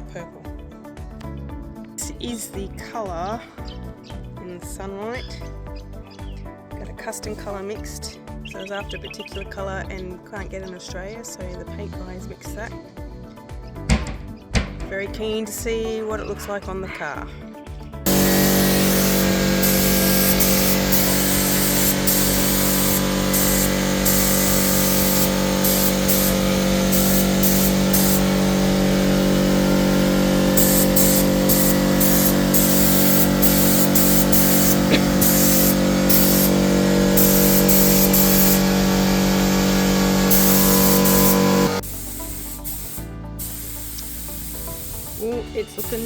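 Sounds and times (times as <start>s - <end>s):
steady low hum: 18.1s - 41.8s
paint spray gun hissing: 18.1s - 46.0s.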